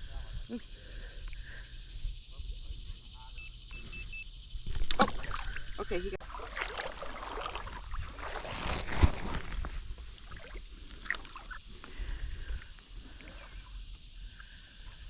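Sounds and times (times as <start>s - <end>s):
water splashing around a kayak: 4.8s - 14.3s.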